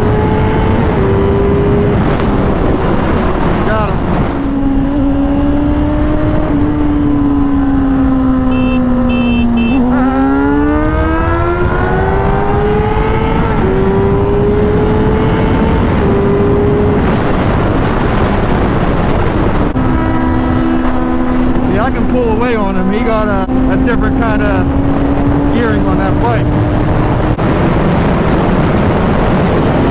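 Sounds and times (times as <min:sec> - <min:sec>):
motorcycle engine accelerating: 0:00.0 - 0:29.9
wind noise: 0:00.0 - 0:29.9
short high beeps: 0:08.5 - 0:09.8.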